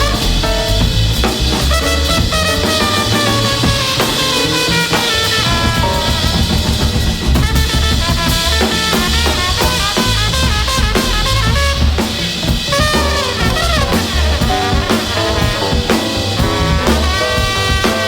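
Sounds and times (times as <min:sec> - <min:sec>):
music with drum beat: 0:00.0 - 0:18.0.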